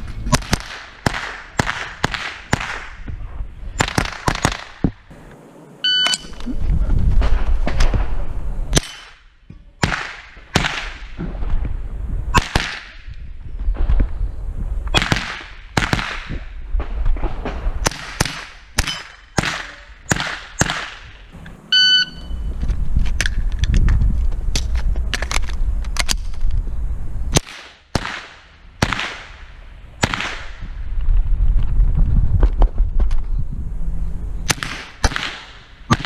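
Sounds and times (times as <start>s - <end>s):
rifle gunshots with echo: 0.3s - 3.0s, 15.0s - 16.4s, 17.8s - 21.3s, 27.4s - 29.4s, 34.5s - 36.0s
low rumble: 4.8s - 8.7s.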